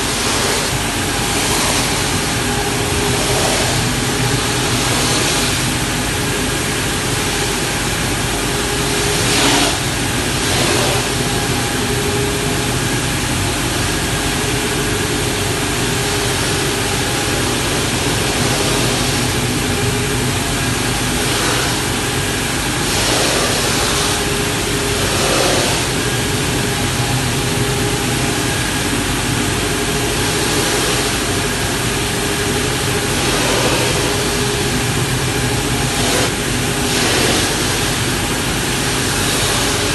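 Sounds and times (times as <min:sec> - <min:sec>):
grinding machine hum: 0:00.0 - 0:39.9
loud hiss: 0:15.6 - 0:39.9.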